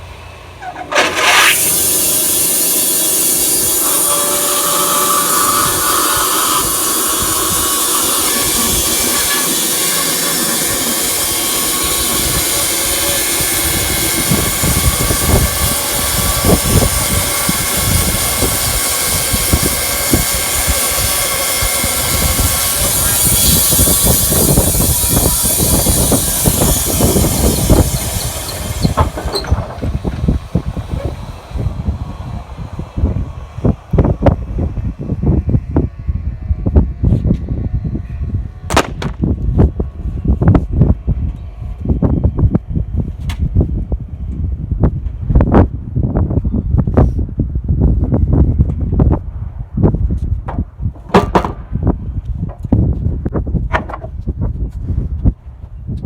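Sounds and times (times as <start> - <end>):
bandsaw mill blade whining: 0.0 - 35.2
wood knocks and crackles: 53.7 - 54.5.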